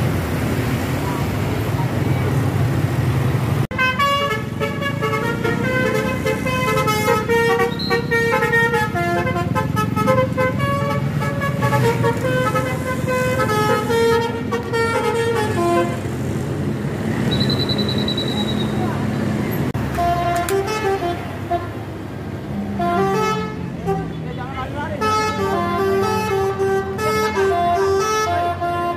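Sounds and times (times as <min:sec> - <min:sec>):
musical bus horn melody: 0:03.7 - 0:16.2, 0:19.8 - 0:24.2, 0:24.9 - 0:28.9.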